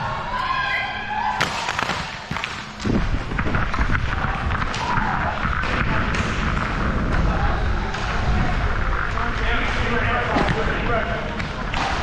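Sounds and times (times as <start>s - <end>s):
rumbling scraping noise: 2.8s - 12.0s.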